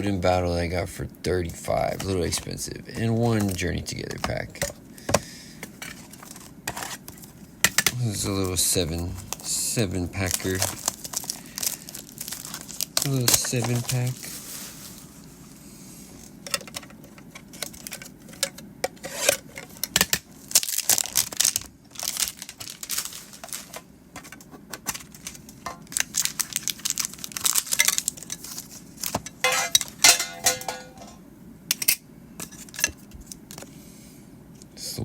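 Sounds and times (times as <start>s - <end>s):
foil wrappers tearing and crinkling: 1.8s - 4.6s, 8.0s - 15.3s, 19.0s - 31.0s.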